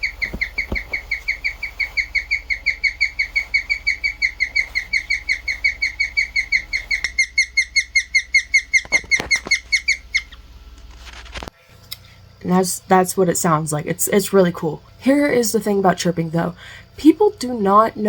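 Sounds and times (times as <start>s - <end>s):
guinea pig chirping: 0.0s - 10.4s.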